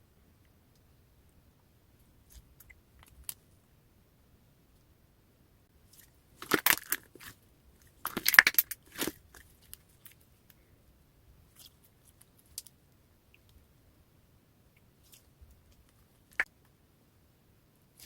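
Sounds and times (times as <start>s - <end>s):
slime squeezed crackling: 6.4s - 7.4s.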